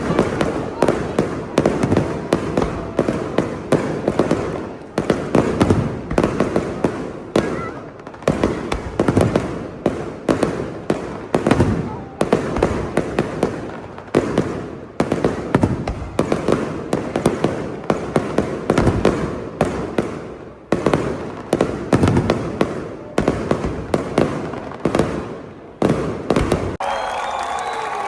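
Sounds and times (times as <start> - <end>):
fireworks crackling: 0.0 - 28.0.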